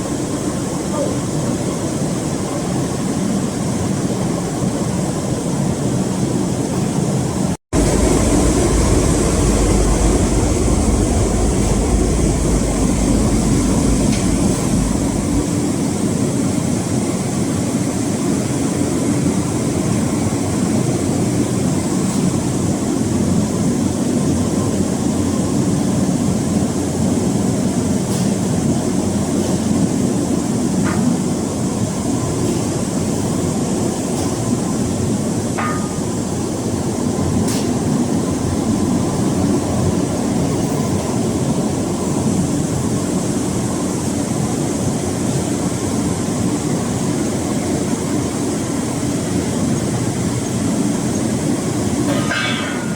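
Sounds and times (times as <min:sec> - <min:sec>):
baler machine drone: 0:06.7 - 0:17.0.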